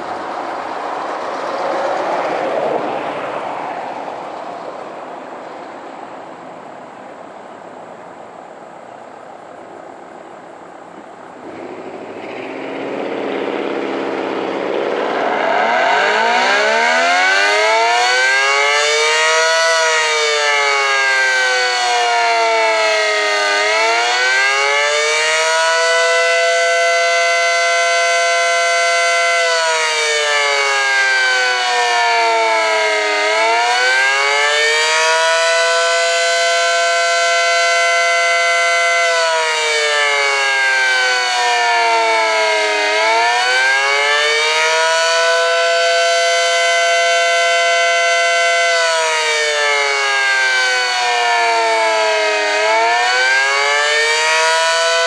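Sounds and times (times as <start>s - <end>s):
two-tone warning siren wailing: 0.0s - 7.4s, 11.2s - 55.0s
rushing noise: 0.0s - 19.4s.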